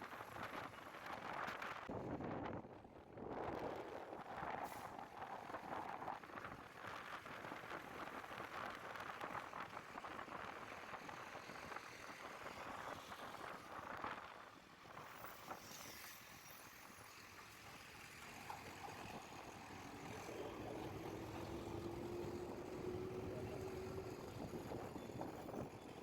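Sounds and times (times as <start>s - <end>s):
road traffic noise: 17.2s - 26.0s.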